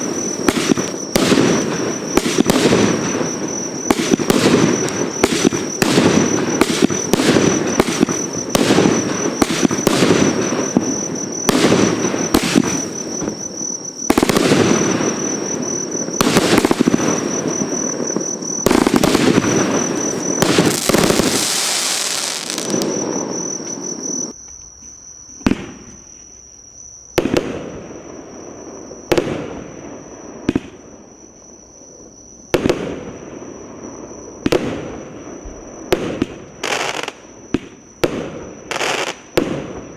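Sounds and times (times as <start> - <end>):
fireworks launching and bursting: 0.0 - 24.3, 29.0 - 29.8, 32.5 - 33.3, 34.4 - 39.9.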